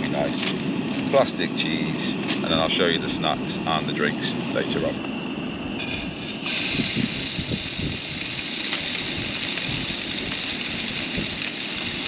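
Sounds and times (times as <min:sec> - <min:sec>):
burgers sizzling in oil: 0:05.8 - 0:12.0
small crackles: 0:07.4 - 0:12.0.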